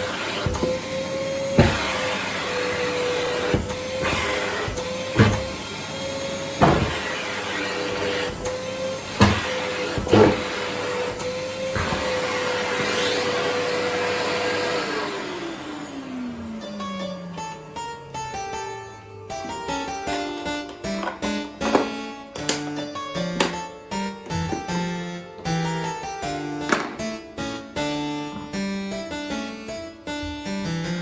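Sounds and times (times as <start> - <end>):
vacuum motor winding down: 0.0 - 19.5
vacuum cleaner running: 0.0 - 27.1
nozzle knocking: 6.5 - 7.3.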